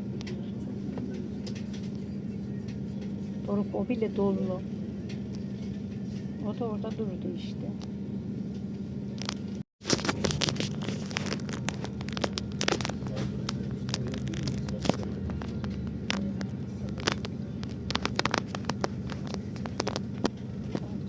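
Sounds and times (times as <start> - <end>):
low engine hum: 0.0 - 21.0
sharp clicks and crackles: 9.2 - 21.0.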